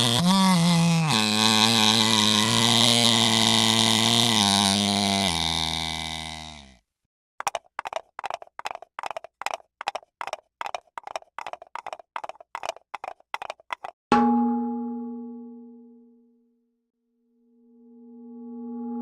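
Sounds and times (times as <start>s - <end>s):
hollow wood block knocks: 7.4s - 14.0s.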